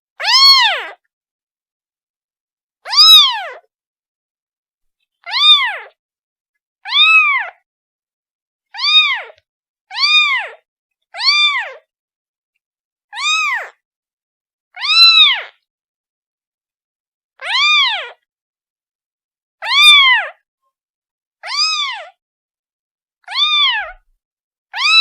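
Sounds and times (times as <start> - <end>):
kitten meowing: 0.2 - 1.0, 2.9 - 3.7, 5.2 - 6.0, 6.9 - 7.6, 8.8 - 10.6, 11.2 - 11.9, 13.2 - 13.8, 14.7 - 15.6, 17.4 - 18.2, 19.6 - 20.4, 21.4 - 22.2, 23.2 - 24.0, 24.8 - 25.0.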